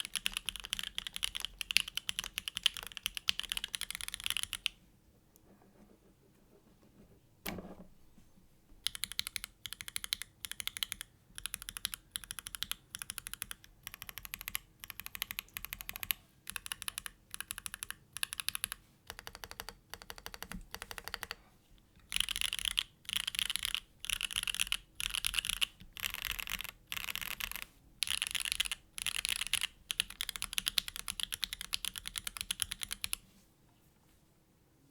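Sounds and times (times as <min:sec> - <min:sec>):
mechanical keyboard typing: 0:00.0 - 0:04.8, 0:08.8 - 0:21.4, 0:22.0 - 0:33.2.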